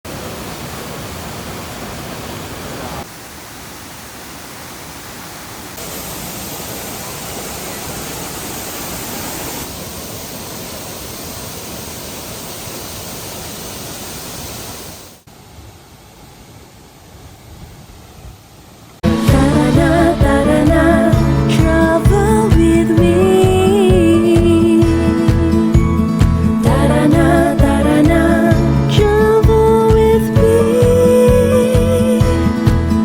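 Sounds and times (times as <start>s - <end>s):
waterfall roaring: 0.0s - 22.6s.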